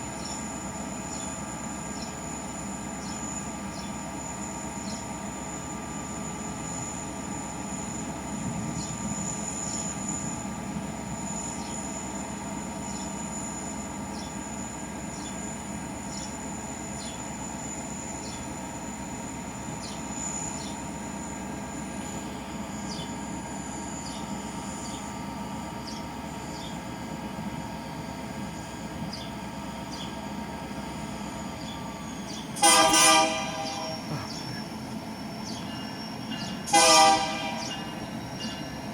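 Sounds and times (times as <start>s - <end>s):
train rumbling by: 0.0s - 38.9s
locomotive air horn blast: 32.6s - 34.3s, 36.7s - 37.9s.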